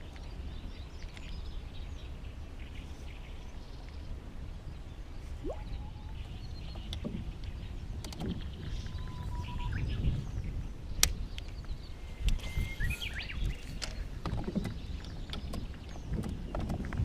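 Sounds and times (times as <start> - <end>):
low river rumble: 0.0 - 17.0
faint bird chirps: 5.2 - 7.7, 8.6 - 10.3, 11.5 - 14.1.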